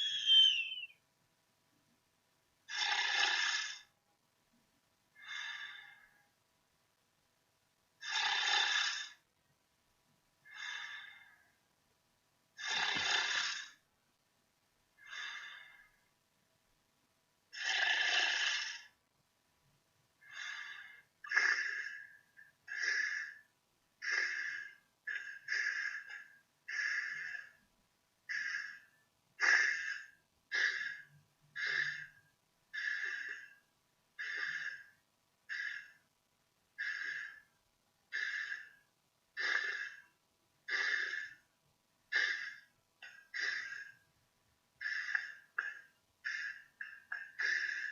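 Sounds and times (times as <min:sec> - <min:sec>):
person snoring: 0:08.0 - 0:09.2, 0:12.6 - 0:13.8.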